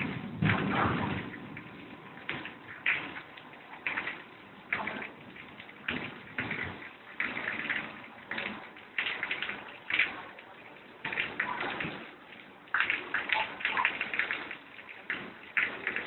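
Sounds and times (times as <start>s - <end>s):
gusty rain: 0.0s - 10.3s.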